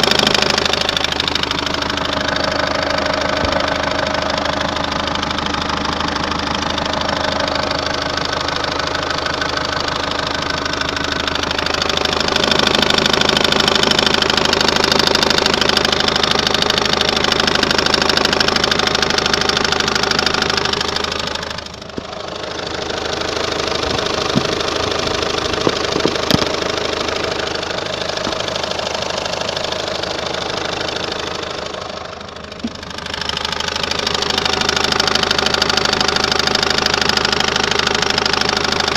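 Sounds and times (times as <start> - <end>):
diesel engine idling: 0.0 - 38.9
noise from engine pulley: 0.0 - 38.9.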